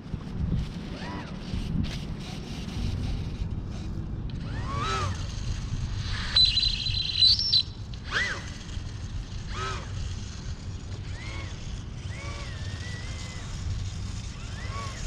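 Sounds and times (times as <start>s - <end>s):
small electric motor and propeller revving: 0.0s - 15.0s.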